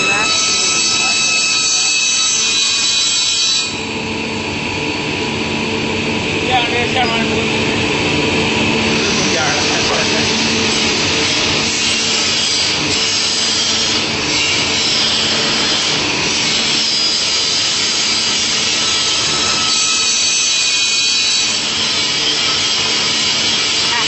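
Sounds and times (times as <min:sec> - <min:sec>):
panel saw cutting wood: 0:00.0 - 0:03.9, 0:08.9 - 0:24.0
saw motor hum: 0:00.0 - 0:24.0.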